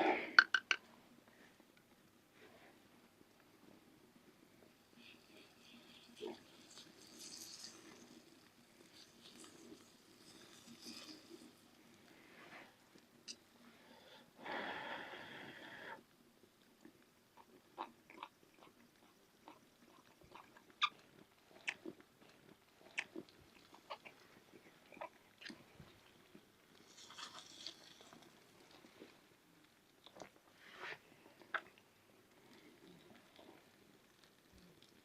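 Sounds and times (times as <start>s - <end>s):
person chewing crunchy chicken: 17.4s - 28.8s.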